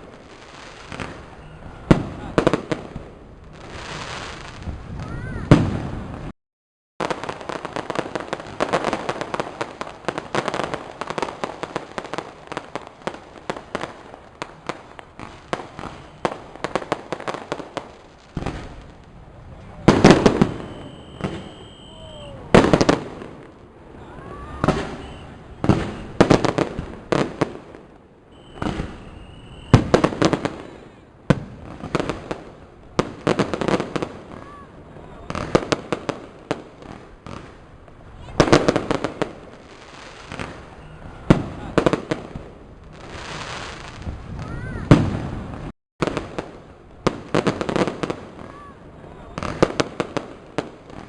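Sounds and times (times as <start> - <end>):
fireworks crackling bangs: 0.0 - 6.3, 7.0 - 51.0
fireworks loud booms: 0.0 - 6.3, 7.0 - 51.0
firework high whistles: 0.4 - 2.0, 19.8 - 23.1, 24.0 - 26.4, 28.3 - 31.0, 39.8 - 41.5.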